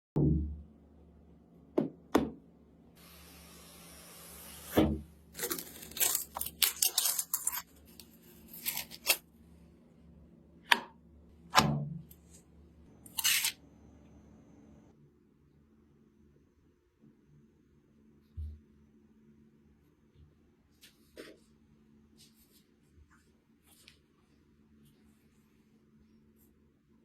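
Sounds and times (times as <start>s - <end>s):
packaging tearing hiss: 5.4s - 7.7s.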